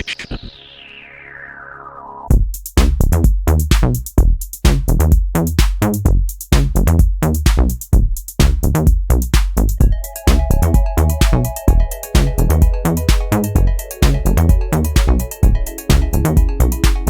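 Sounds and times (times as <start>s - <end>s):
falling synth sweep: 0.0s - 2.3s, 9.8s - 16.8s
drum machine beat: 2.3s - 17.0s.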